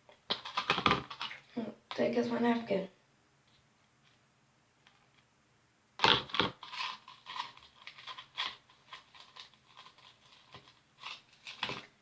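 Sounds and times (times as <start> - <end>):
slime crackling and popping: 0.3 - 1.4, 6.0 - 8.6.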